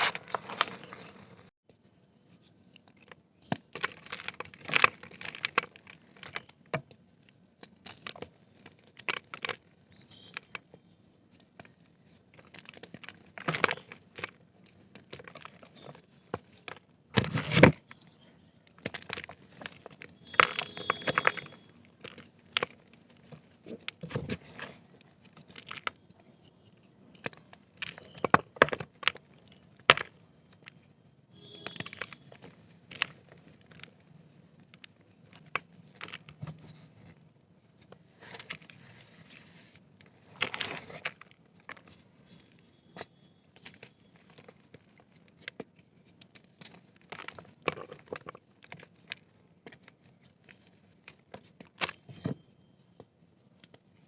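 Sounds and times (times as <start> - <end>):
dry dirt crunching: 0.0 - 1.5.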